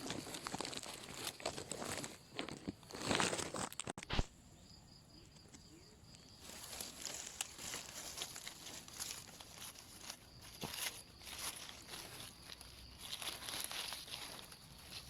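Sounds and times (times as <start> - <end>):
footsteps crunching through dry leaves: 6.4 - 15.0.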